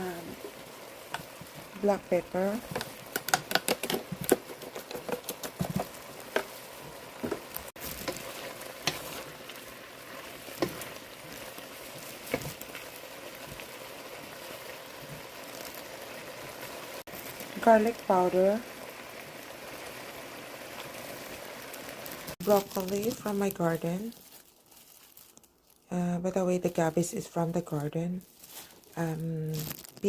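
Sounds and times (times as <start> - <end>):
food sizzling in a pan: 0.0 - 30.0
sharp clicks and knocks: 2.7 - 6.5.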